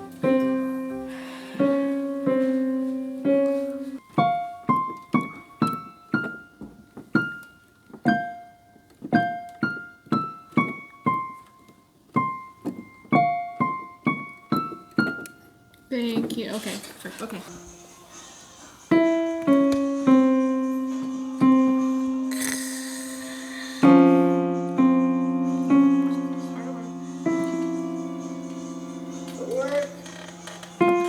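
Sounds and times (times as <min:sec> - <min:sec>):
piano melody: 0:00.0 - 0:16.5, 0:17.5 - 0:31.0.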